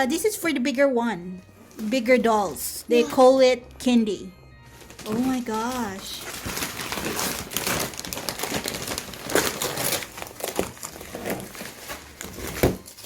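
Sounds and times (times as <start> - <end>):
packaging crinkling and rustling: 4.7 - 13.0.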